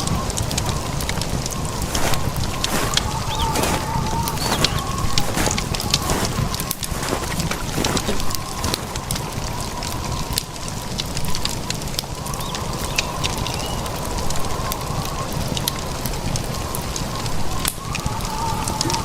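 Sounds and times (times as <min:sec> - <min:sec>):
faint wavering whistle: 0:00.0 - 0:06.6
sharp crackling ticks: 0:00.0 - 0:19.0
wind buffeting microphone: 0:00.0 - 0:19.0.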